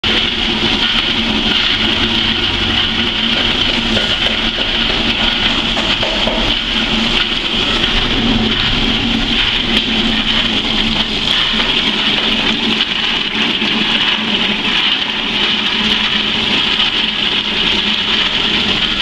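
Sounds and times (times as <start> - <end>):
machine motor hum: 0.0 - 14.2
continuous rushing noise: 0.0 - 19.0.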